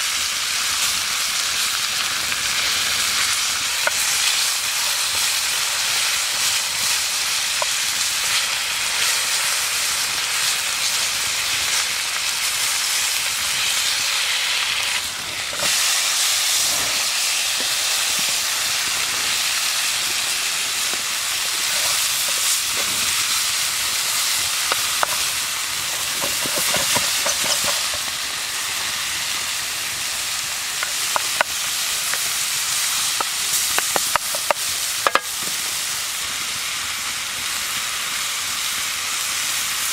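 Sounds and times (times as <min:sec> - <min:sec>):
meat sizzling in hot fat: 0:00.0 - 0:39.9
fat popping and crackling: 0:15.0 - 0:19.2, 0:19.9 - 0:28.2, 0:30.8 - 0:35.6.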